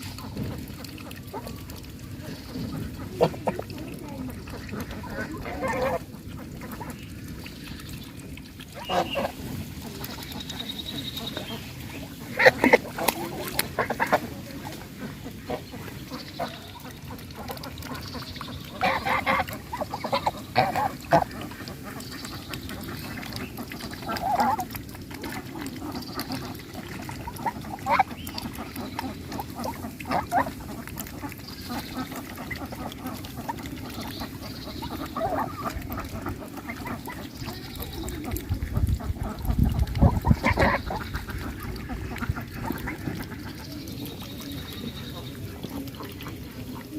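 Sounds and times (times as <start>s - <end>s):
goose honking: 5.0s - 6.1s, 8.8s - 9.4s, 18.8s - 21.3s, 40.1s - 41.2s.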